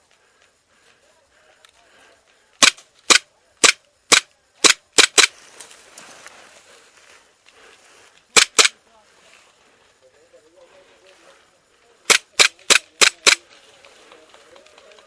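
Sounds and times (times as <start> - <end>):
airsoft gun pops: 2.6 - 5.3.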